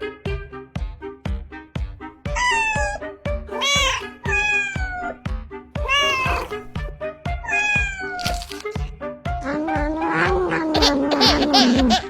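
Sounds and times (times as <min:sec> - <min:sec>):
background music with steady beat: 0:00.0 - 0:12.0
cat meowing: 0:02.4 - 0:05.2, 0:05.8 - 0:06.8, 0:07.4 - 0:08.8.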